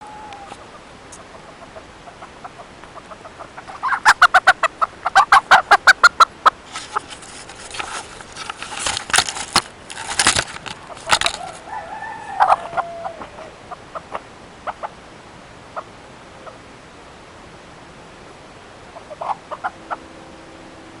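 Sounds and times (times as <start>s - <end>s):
rooster clucking: 0.0s - 7.1s, 10.8s - 15.0s, 18.9s - 21.0s
rustling and scuffling: 6.6s - 11.7s.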